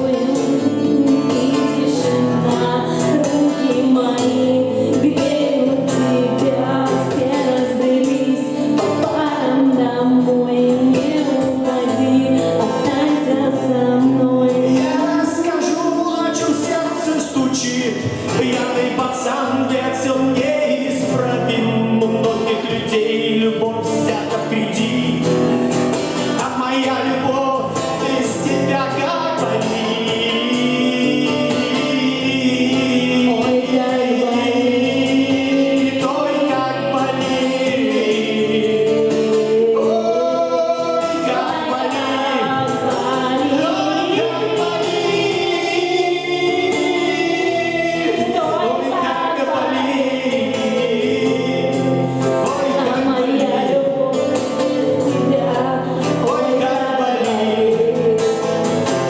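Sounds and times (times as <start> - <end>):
song with singing: 0.0 - 59.0.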